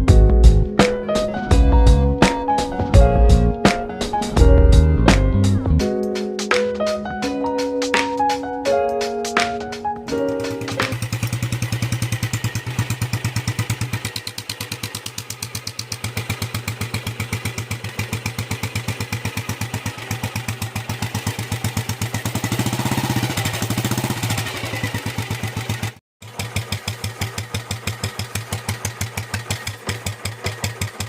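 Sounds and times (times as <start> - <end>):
motorcycle engine idling: 10.3 - 31.0.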